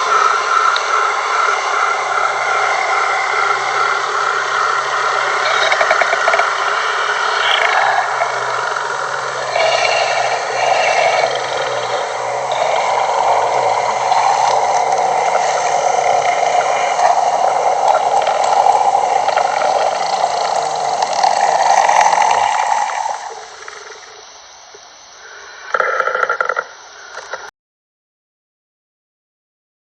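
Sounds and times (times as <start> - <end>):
monster creature vocalization: 0.0 - 24.3.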